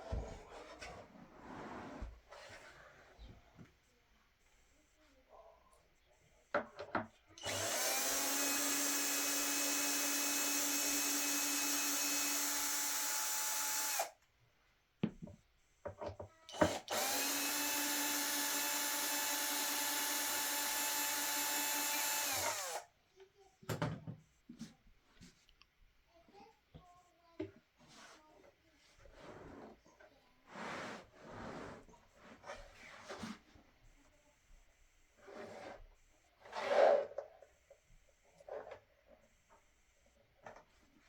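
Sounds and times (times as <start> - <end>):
electric drill running: 7.4 - 14.1, 16.5 - 22.9.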